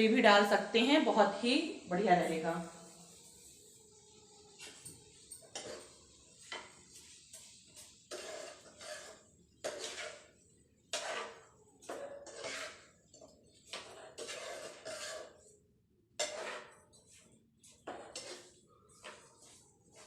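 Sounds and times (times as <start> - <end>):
spoon scraping cookware: 4.4 - 15.6, 16.2 - 20.0.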